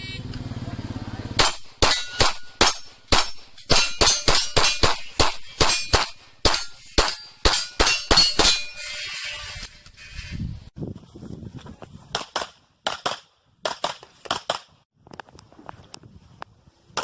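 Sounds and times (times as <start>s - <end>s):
rapid pistol fire: 1.4s - 8.3s, 12.2s - 14.8s
steel targets clanging: 1.4s - 10.0s.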